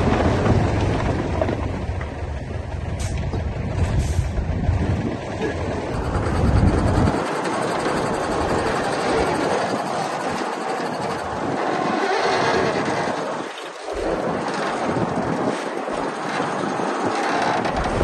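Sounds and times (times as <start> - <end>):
heavy low rumble: 0.0 - 9.5, 17.7 - 18.0
bulldozer diesel engine running: 1.1 - 11.7
steel tracks clanking: 5.9 - 12.0.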